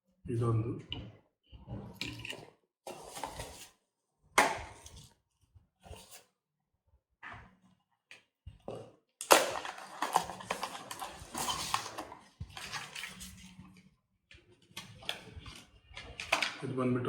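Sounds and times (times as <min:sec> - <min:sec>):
packaging crackling and rustling: 0:09.2 - 0:13.6.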